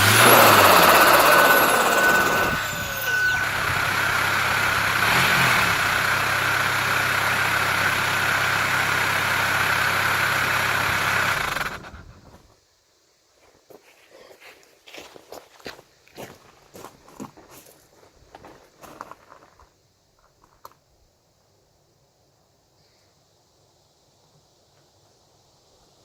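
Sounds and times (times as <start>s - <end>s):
turbo whistle: 0.0s - 6.1s
turbocharged car engine idling: 0.0s - 12.3s.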